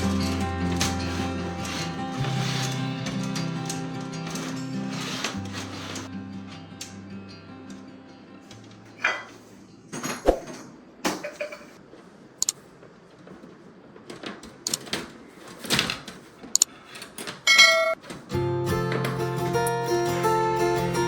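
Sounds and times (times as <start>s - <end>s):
music: 0.0s - 9.5s, 18.3s - 21.0s.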